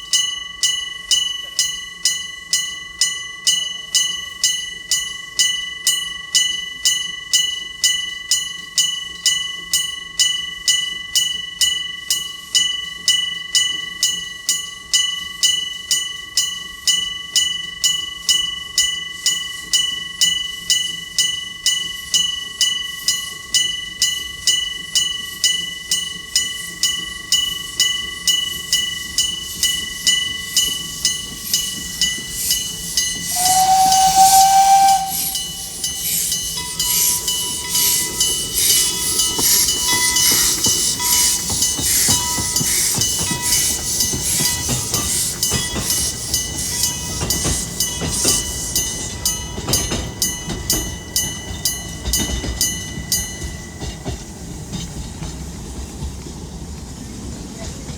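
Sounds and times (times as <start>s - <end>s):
steam hissing: 25.2s - 57.6s
level crossing bell ringing: 27.8s - 43.8s
steam locomotive whistle: 31.5s - 41.4s.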